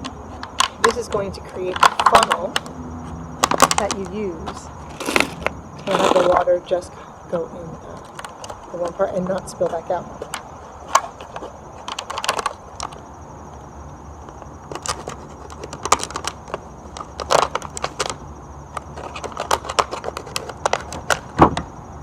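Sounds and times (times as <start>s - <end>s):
plastic bottle crackling: 3.4s - 6.5s, 8.0s - 13.0s, 14.2s - 21.5s.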